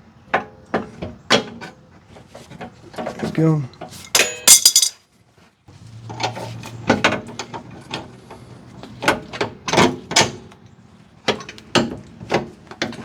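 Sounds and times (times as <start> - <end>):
metal clanks and knocks: 2.5 - 5.0.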